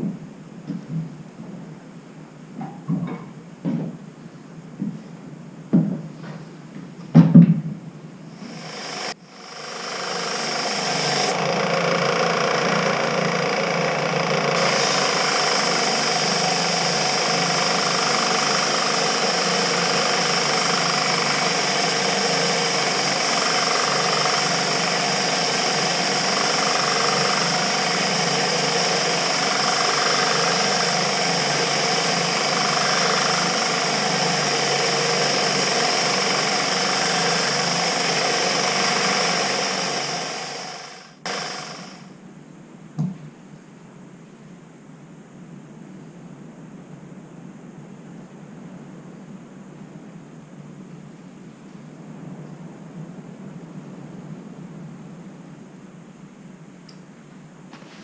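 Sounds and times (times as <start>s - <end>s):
woodworking machine motor whine: 8.3s - 42.1s.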